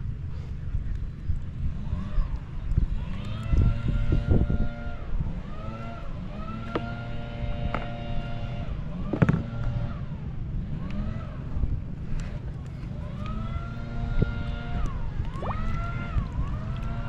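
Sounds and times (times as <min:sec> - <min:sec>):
vehicle engines passing: 0:00.0 - 0:17.0
sharp clicks and knocks: 0:09.1 - 0:09.5.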